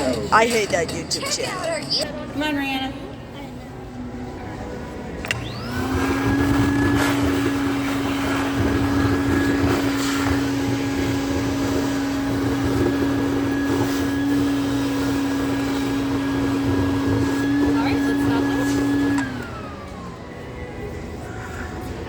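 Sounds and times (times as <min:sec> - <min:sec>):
blower humming: 0:04.5 - 0:22.0.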